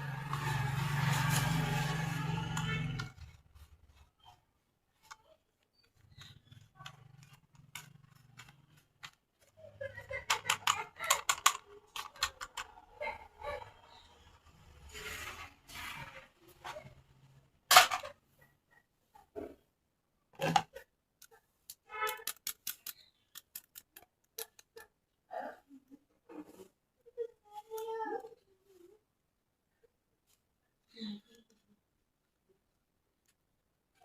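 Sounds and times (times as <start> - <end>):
plastic toy clicks and rustles: 5.0 - 13.2, 20.4 - 25.0.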